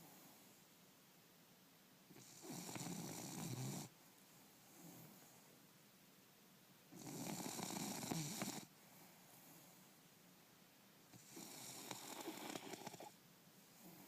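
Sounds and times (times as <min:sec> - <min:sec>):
dog snoring: 0:02.1 - 0:03.9, 0:04.7 - 0:05.4, 0:06.9 - 0:08.7, 0:11.1 - 0:13.2, 0:13.8 - 0:14.0.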